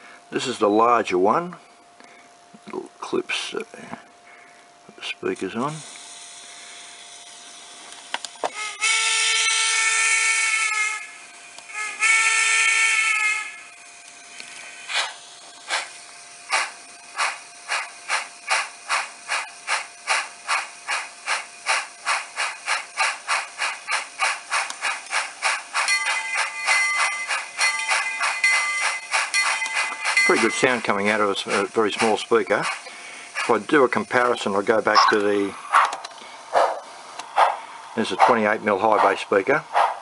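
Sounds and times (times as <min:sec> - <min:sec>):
locomotive exhaust chuffs: 0:05.0 - 0:39.9
steam hiss: 0:05.5 - 0:36.5
locomotive whistle blasts: 0:08.4 - 0:13.7.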